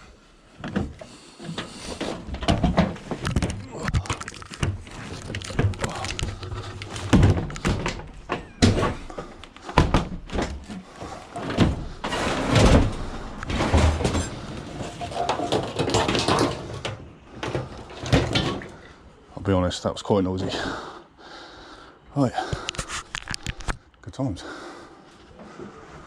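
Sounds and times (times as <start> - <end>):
scraping: 0.8 - 19.0
heavy thuds and bangs: 11.3 - 16.6
sheet metal clattering: 11.3 - 17.0.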